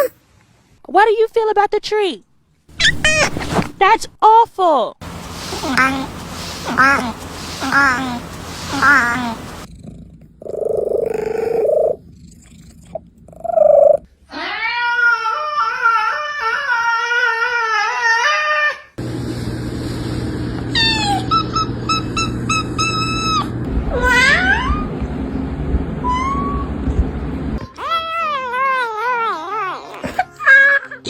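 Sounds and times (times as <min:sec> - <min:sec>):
cat chirping: 0:02.8 - 0:03.6, 0:05.0 - 0:09.7
cat yowling: 0:05.1 - 0:09.7, 0:14.3 - 0:18.4, 0:27.6 - 0:31.0.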